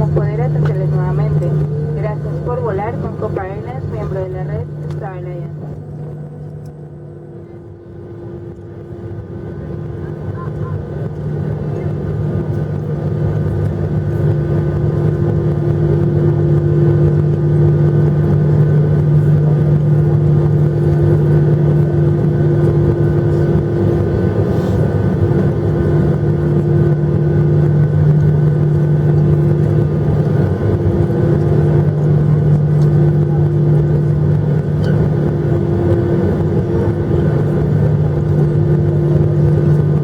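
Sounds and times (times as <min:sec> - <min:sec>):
airplane cabin drone: 0:00.0 - 0:40.0.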